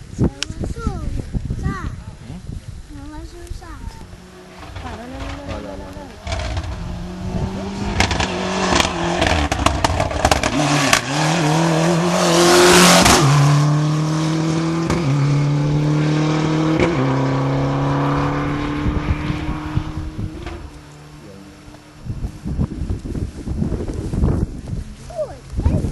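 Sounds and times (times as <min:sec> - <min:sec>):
rush of passing car: 0:03.6 - 0:25.2
rally car engine accelerating: 0:04.2 - 0:22.5.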